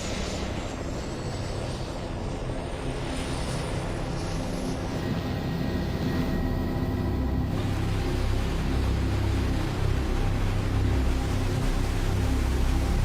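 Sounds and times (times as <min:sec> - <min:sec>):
helicopter engine and rotor: 0:00.0 - 0:09.3.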